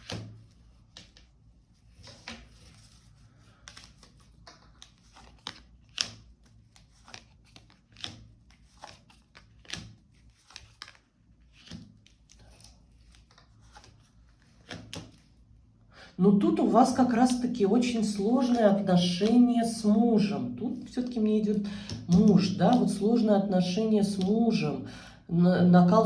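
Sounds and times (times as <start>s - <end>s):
cards flicked and tapped on table: 0.0s - 1.3s, 7.0s - 12.3s, 14.6s - 15.2s.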